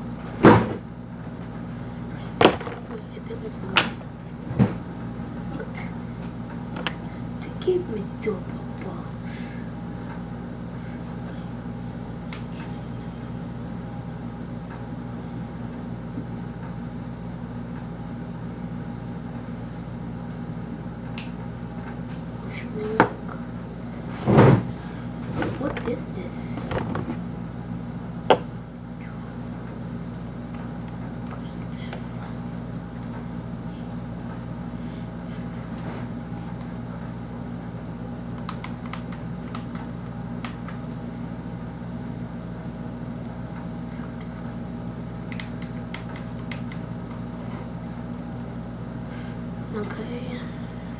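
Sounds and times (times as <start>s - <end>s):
low mechanical hum: 0.0s - 50.9s.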